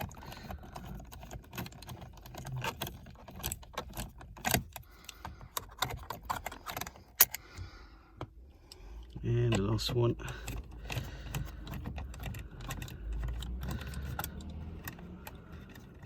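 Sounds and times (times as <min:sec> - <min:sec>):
screwdriver clicking and rattling: 0:00.0 - 0:07.4.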